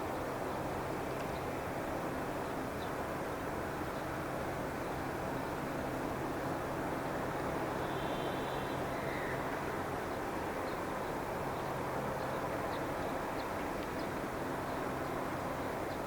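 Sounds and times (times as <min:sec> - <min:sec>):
machinery roar with low hum: 0:00.0 - 0:16.0
road traffic: 0:00.0 - 0:16.0.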